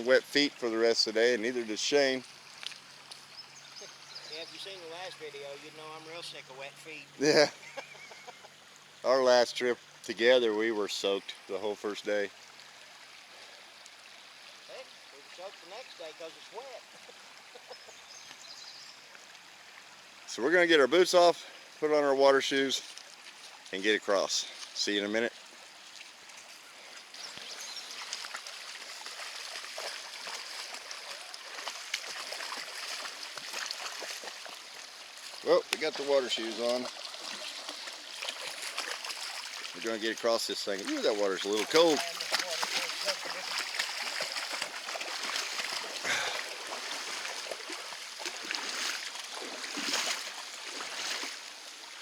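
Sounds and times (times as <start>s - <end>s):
creek water running over rocks: 0.0s - 52.0s
feet wading and splashing: 2.3s - 5.5s, 22.6s - 23.7s, 25.4s - 52.0s.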